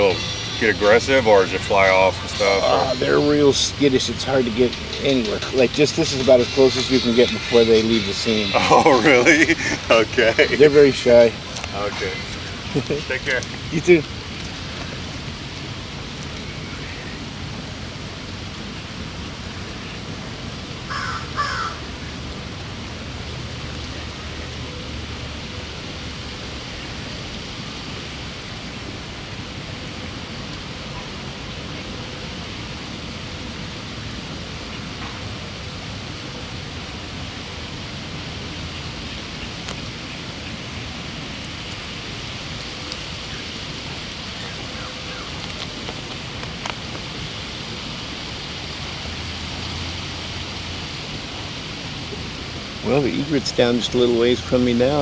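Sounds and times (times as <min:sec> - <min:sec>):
harsh bird calls: 0:00.0 - 0:15.1, 0:20.9 - 0:22.2, 0:43.2 - 0:46.1
outdoor background hiss: 0:00.0 - 0:55.0.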